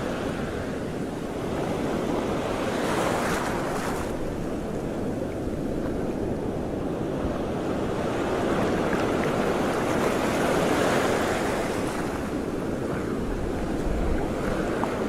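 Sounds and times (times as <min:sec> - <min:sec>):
wind on microphone: 0:00.0 - 0:15.0
rushing water: 0:08.0 - 0:15.0.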